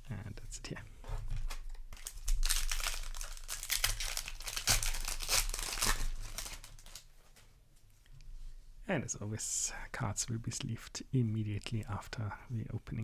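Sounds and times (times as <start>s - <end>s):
foil wrapper tearing and crinkling: 1.9s - 7.1s.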